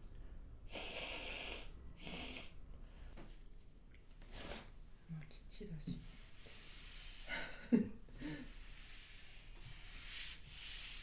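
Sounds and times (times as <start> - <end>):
breathy exhale or sniff: 8.3 - 11.0.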